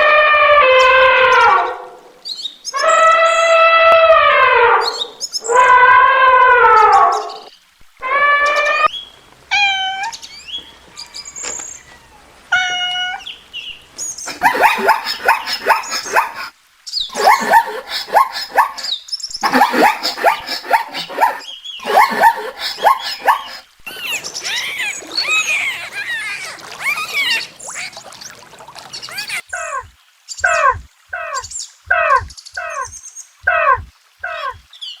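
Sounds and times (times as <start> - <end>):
cats meowing: 9.5 - 10.3, 11.0 - 13.2, 19.5 - 28.1.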